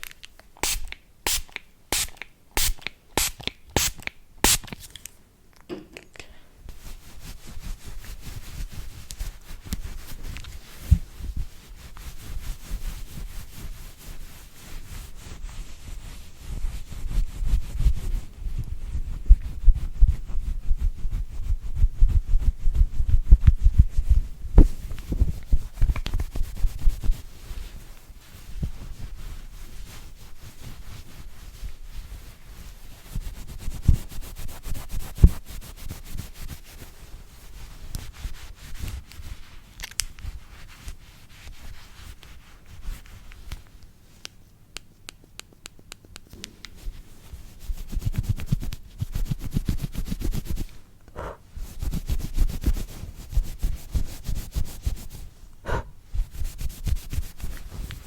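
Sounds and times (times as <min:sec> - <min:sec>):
brush bristles scratching surface: 0:06.7 - 0:18.4, 0:46.7 - 0:50.8, 0:51.6 - 0:58.0.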